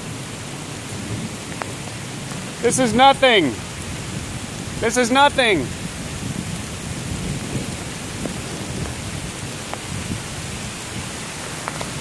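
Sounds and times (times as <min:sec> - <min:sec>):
heavy rain on foliage: 0:00.0 - 0:12.0
rolling thunder: 0:05.7 - 0:11.2.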